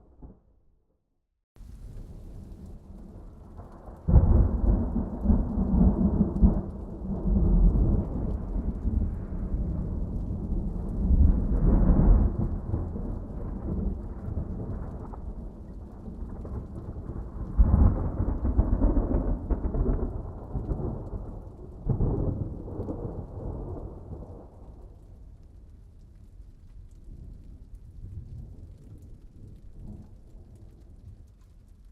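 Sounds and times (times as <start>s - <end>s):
rolling thunder: 1.6s - 25.4s
rain: 1.6s - 31.9s.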